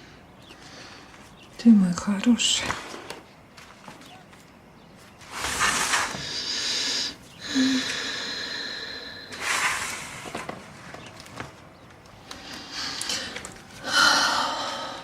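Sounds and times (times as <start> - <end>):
person breathing heavily: 6.0 - 9.9, 12.3 - 15.0.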